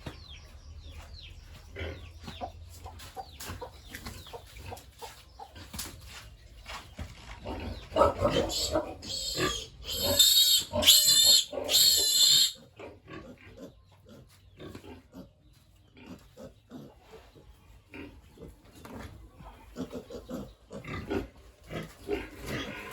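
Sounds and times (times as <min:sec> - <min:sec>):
pigs squealing: 0:07.5 - 0:15.3.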